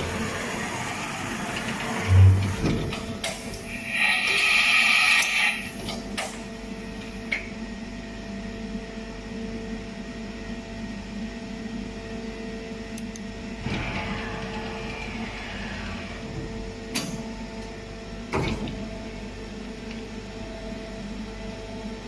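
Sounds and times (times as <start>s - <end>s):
machine hum: 0.0s - 9.3s, 11.1s - 22.0s
loud rushing noise: 1.8s - 3.1s.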